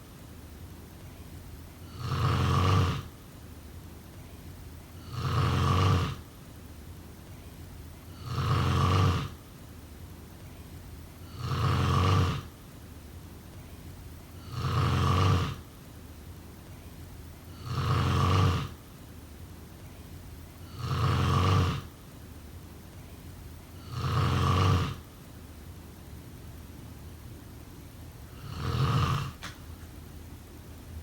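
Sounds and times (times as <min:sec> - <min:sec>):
person snoring: 0:01.8 - 0:03.1, 0:05.0 - 0:06.2, 0:08.1 - 0:09.4, 0:11.2 - 0:12.5, 0:14.4 - 0:15.6, 0:17.5 - 0:18.8, 0:20.6 - 0:21.9, 0:23.7 - 0:25.0, 0:28.3 - 0:29.5.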